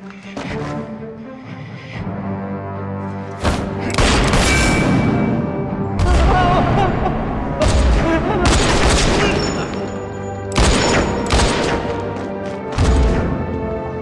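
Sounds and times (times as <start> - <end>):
dramatic film score: 0.0 - 14.0
gunfire bursts and booms: 3.6 - 5.2, 7.6 - 9.7, 10.5 - 13.6.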